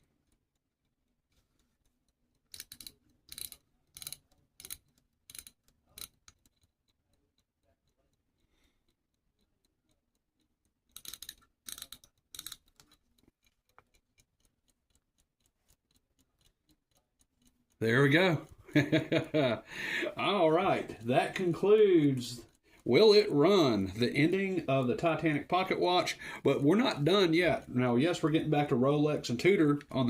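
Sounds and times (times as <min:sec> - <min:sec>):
pocket watch ticking: 0:00.0 - 0:30.0
clicks from handling watch: 0:10.9 - 0:17.8.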